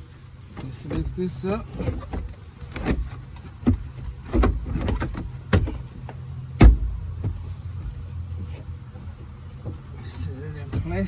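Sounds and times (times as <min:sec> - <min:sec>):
car seat knocking against car body: 0:02.8 - 0:08.0.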